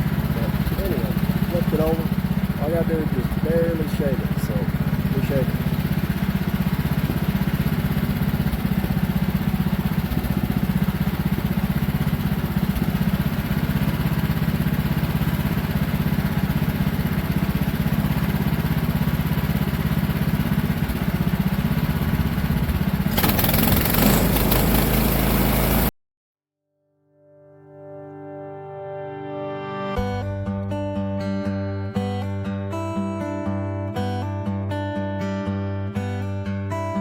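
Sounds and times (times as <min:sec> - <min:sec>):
sawmill engine running: 0:00.0 - 0:25.9.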